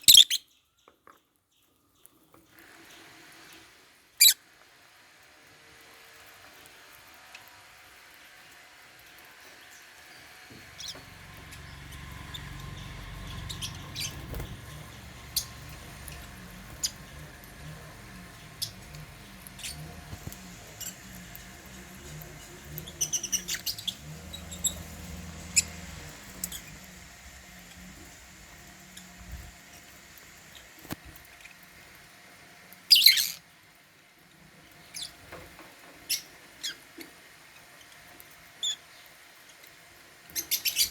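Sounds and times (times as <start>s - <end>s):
birds squeaky chirping: 0.0s - 0.8s, 10.1s - 31.6s, 32.9s - 33.4s, 40.3s - 40.9s
low rumble: 10.8s - 29.8s.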